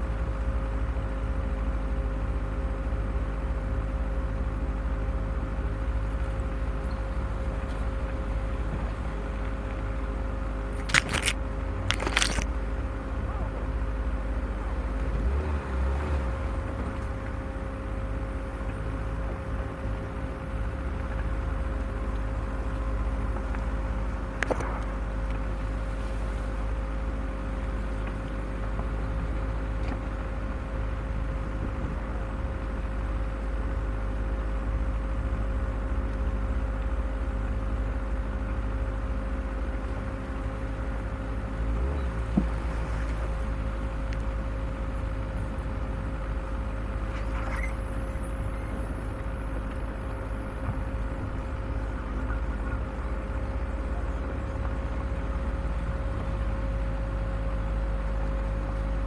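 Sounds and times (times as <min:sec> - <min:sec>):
vehicle engine rumbling: 0:10.6 - 0:12.6.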